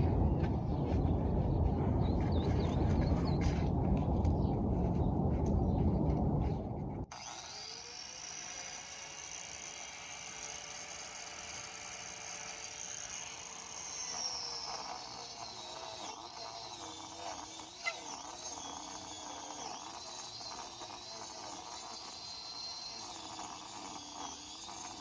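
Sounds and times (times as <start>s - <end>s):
angle grinder whining: 7.0s - 25.0s
grinder disc rasping into wood: 7.1s - 25.0s.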